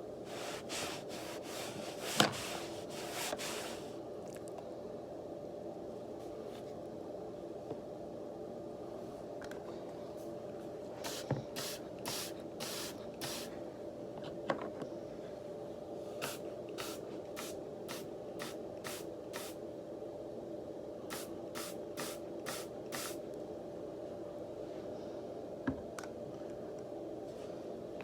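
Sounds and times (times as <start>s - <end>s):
low background hum: 0.0s - 28.0s
spray bottle squirting: 16.2s - 19.5s, 21.1s - 23.2s.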